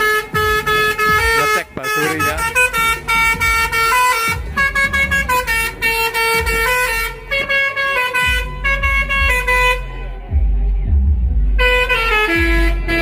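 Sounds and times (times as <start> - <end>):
truck horn playing a tune: 0.0 - 10.4, 11.5 - 13.0
low rumble: 8.3 - 12.9.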